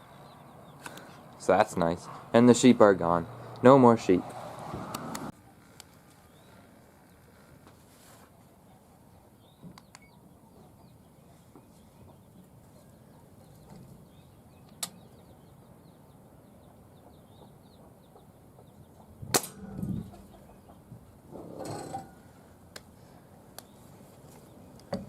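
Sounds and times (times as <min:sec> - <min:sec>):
faint high bird chirping: 0:06.2 - 0:07.3, 0:09.3 - 0:20.9
pellet gun shot: 0:19.3 - 0:19.7.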